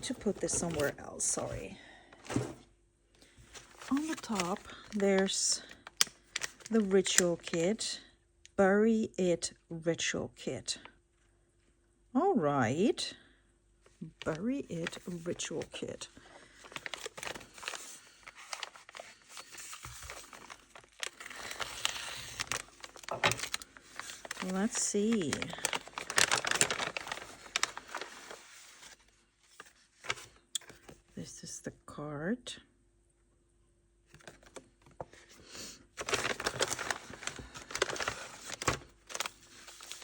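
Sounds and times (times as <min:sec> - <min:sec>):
packaging crinkling: 0:03.2 - 0:07.6, 0:14.2 - 0:30.9, 0:36.0 - 0:40.0.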